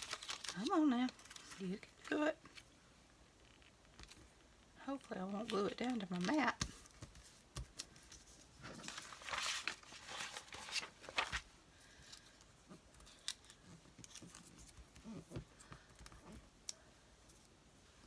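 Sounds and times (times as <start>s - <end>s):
paper rustling and crinkling: 0.0s - 2.7s, 5.4s - 16.4s.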